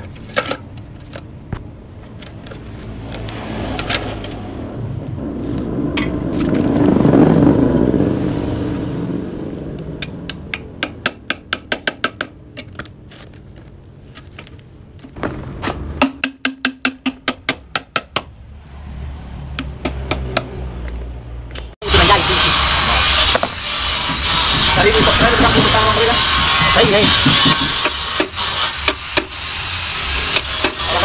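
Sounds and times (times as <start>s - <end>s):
passing vehicle: 2.4s - 11.3s, 18.4s - 22.3s
rapid sharp blows on metal: 23.2s - 31.0s.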